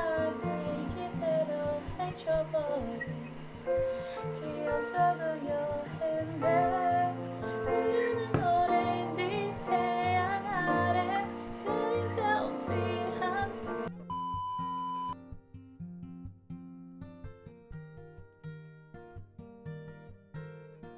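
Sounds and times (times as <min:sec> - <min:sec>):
high voice singing: 0:08.3 - 0:13.7.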